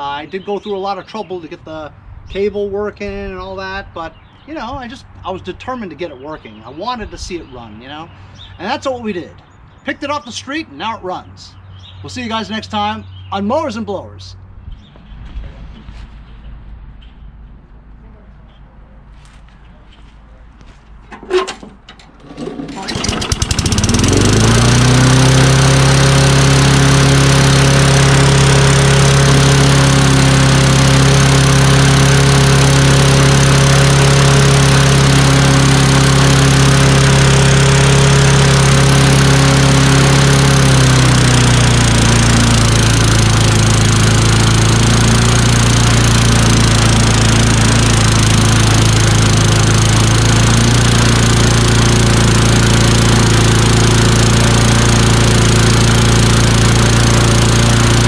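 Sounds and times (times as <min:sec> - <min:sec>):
lawn mower engine running: 0:21.0 - 0:58.0.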